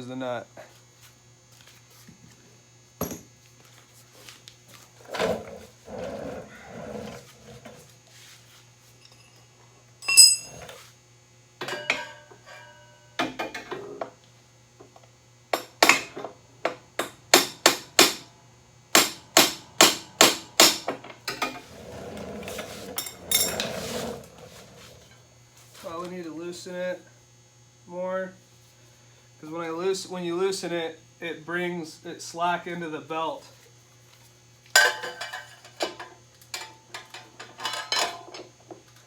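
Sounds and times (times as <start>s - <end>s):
loud ringing metal clank: 10.0s - 10.6s
light metal clinks: 10.0s - 10.7s.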